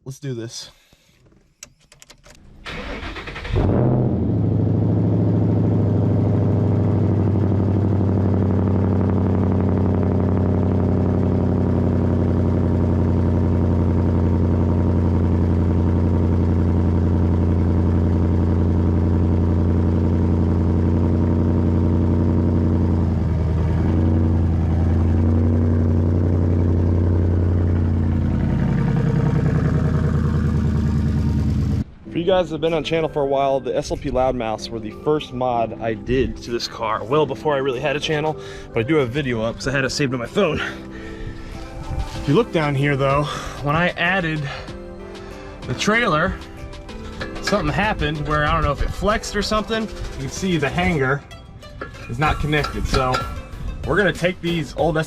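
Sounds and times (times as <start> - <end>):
starter motor cranking: 0.8 - 3.8
car engine fast idle: 2.6 - 3.9, 5.4 - 31.8.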